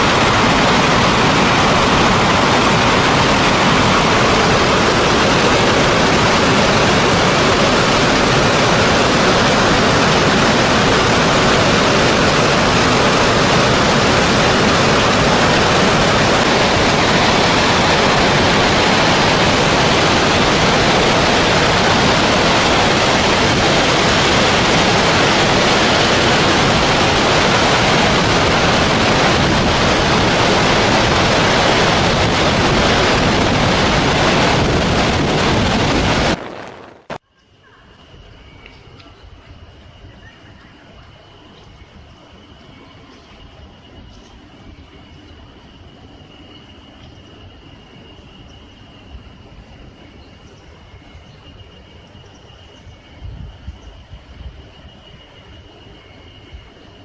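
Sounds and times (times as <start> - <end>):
water gushing down spillway: 0.0 - 37.2.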